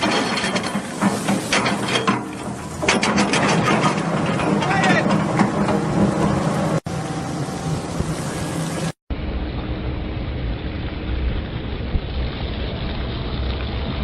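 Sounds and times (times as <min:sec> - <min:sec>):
heavy equipment engine running: 0:00.0 - 0:14.0
dull deep rumble: 0:09.1 - 0:14.0.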